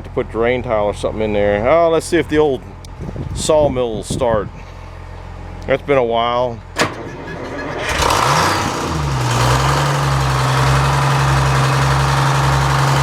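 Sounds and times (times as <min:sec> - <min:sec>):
sawmill engine starting and idling: 0:06.7 - 0:13.0.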